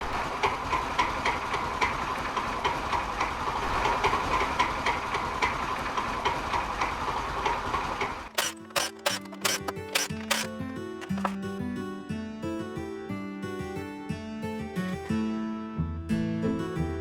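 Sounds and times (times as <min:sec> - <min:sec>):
scooter drive clattering rattle: 0:06.3 - 0:11.6.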